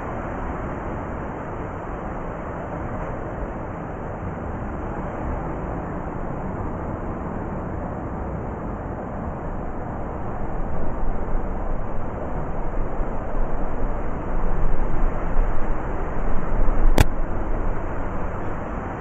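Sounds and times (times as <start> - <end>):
blizzard wind rushing: 8.8 - 19.0.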